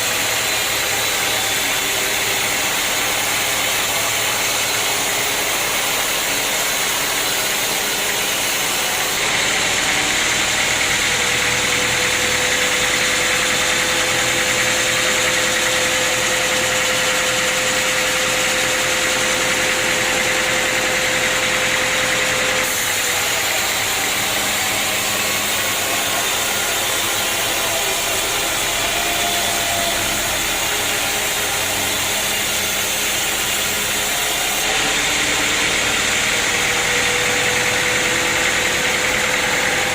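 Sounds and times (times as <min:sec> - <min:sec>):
sawmill machinery running: 0:00.0 - 0:39.9
steady whine: 0:08.7 - 0:35.7.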